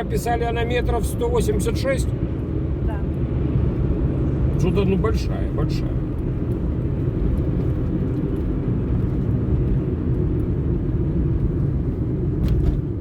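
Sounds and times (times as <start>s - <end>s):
car engine and tyre rumble: 0.0s - 13.0s.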